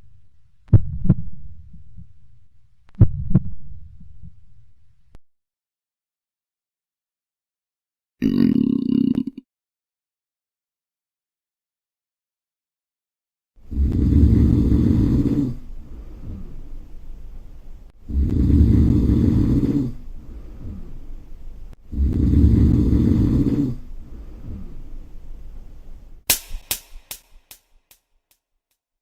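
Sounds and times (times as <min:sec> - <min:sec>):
person snoring: 0:08.2 - 0:09.4, 0:13.7 - 0:15.7, 0:18.0 - 0:20.8, 0:21.9 - 0:23.9
breath out: 0:15.8 - 0:16.6, 0:20.2 - 0:21.0
rapid sharp clicks: 0:26.3 - 0:28.0.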